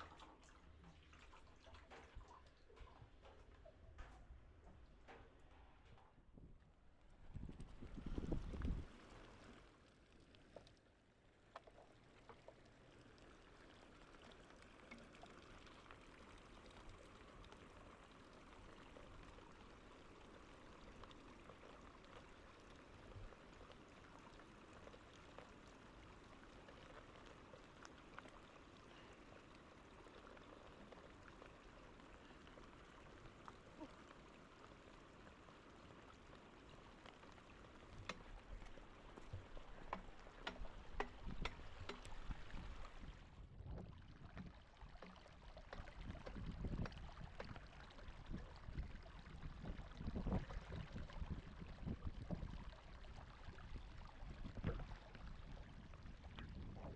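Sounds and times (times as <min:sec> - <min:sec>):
faint hiss of water: 0:07.1 - 0:56.9
light ticks: 0:37.0 - 0:42.8.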